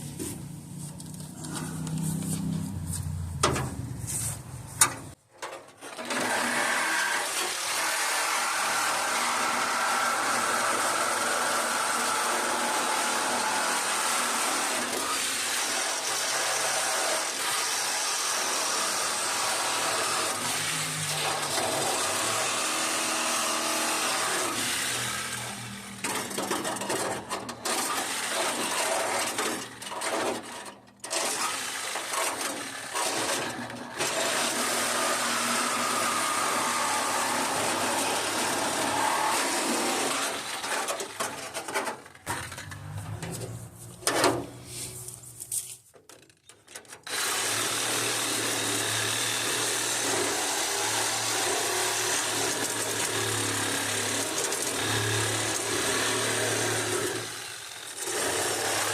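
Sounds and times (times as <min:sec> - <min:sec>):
handheld power tool running: 0:05.9 - 0:41.9, 0:47.0 - 0:58.9.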